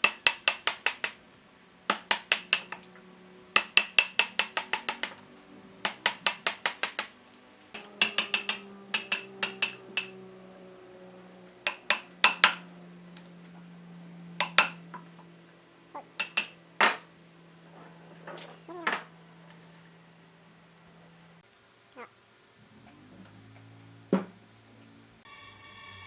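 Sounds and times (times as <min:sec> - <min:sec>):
faint steady hum: 0:00.0 - 0:26.0
sharp ringing hammer taps: 0:07.8 - 0:10.2, 0:11.7 - 0:12.6, 0:14.4 - 0:14.8.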